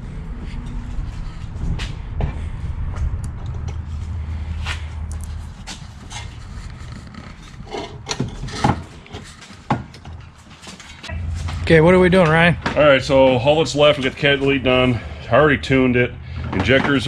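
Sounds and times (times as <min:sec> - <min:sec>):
low steady rumble: 0:00.0 - 0:17.0
metal knocks and clicks: 0:05.6 - 0:11.6.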